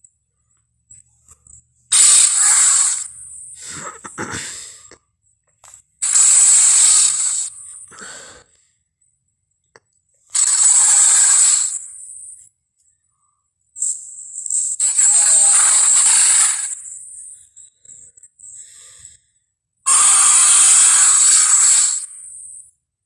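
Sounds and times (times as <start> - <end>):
dinosaur breathy hissing bursts: 1.9 - 4.9, 6.0 - 8.5, 10.3 - 12.0, 14.8 - 16.8, 19.9 - 22.2.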